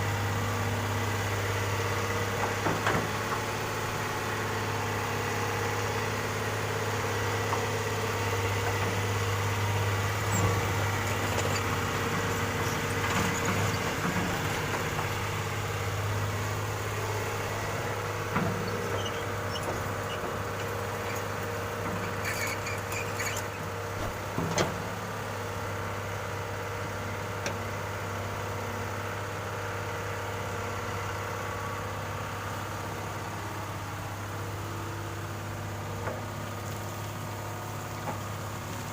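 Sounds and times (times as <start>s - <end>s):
diesel engine humming: 0.0s - 28.6s.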